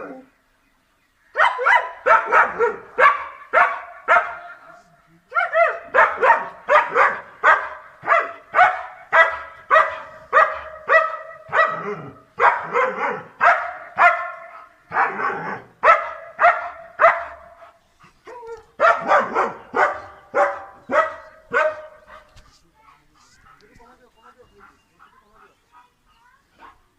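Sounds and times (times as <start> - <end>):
dog barking: 1.4 - 17.8, 18.8 - 22.4.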